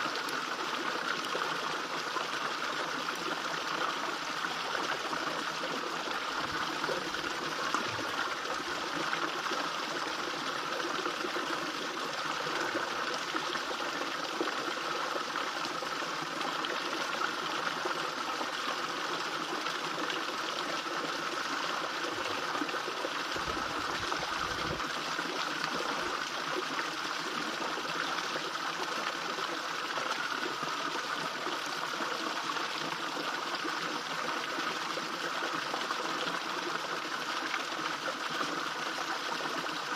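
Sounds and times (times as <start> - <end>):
water trickling into pond: 0.0 - 39.9.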